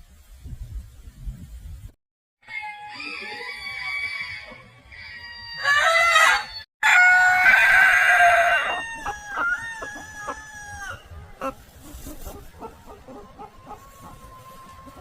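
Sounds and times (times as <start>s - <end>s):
rooster crowing: 2.4s - 11.1s.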